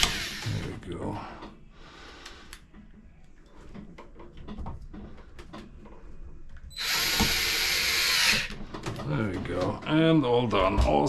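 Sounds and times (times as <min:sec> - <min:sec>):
cordless drill driving screw: 0:00.0 - 0:00.6, 0:06.7 - 0:08.6.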